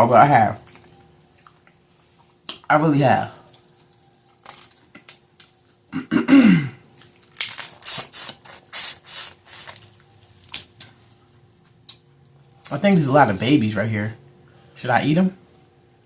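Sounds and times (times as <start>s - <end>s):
wet sucking and slurping: 7.8s - 9.9s.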